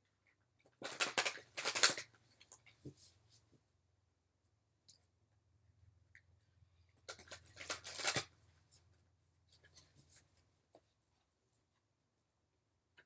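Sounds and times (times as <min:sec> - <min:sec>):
cards rustling while shuffled: 0:00.8 - 0:02.1, 0:07.1 - 0:08.3.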